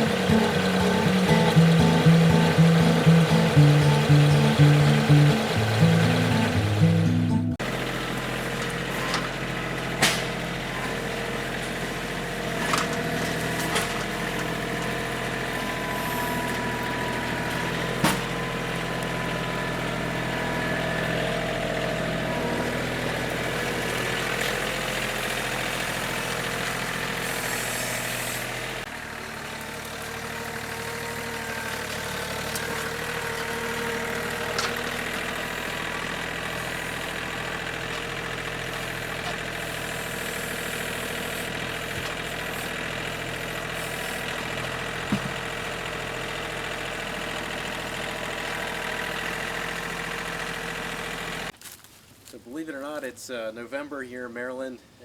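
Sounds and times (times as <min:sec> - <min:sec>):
engine idling: 0:00.0 - 0:51.6.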